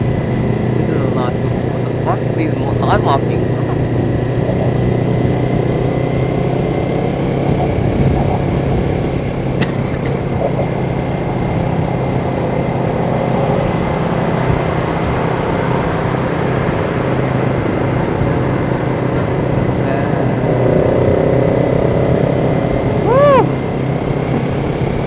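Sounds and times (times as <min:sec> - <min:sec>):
motorcycle engine running steadily: 0:00.0 - 0:25.0.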